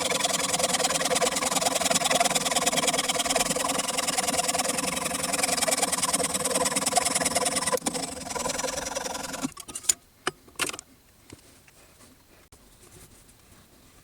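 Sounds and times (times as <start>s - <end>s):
motor-driven machine running: 0.0s - 9.6s.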